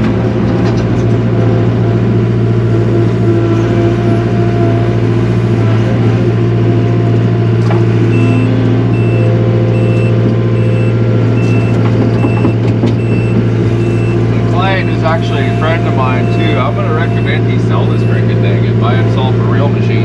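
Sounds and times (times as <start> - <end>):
loader engine running: 0.0 - 20.0
backup alarm beeping: 7.9 - 18.7.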